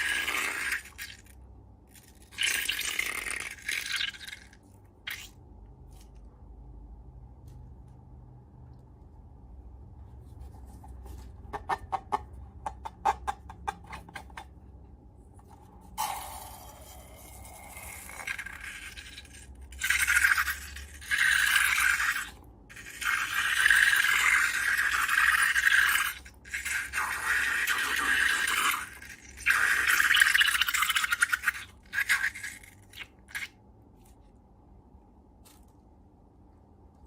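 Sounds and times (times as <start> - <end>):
slime squeezed by hand: 0.0 - 6.1, 22.9 - 33.6.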